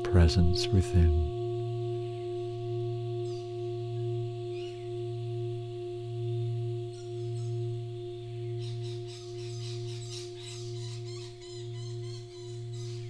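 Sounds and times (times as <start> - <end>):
faint bird chirps: 0.0 - 13.0
musical drone: 0.0 - 13.0.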